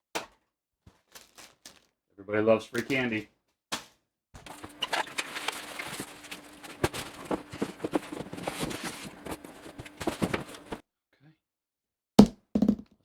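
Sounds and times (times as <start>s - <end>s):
packaging rustling: 1.1s - 1.8s, 4.5s - 10.8s.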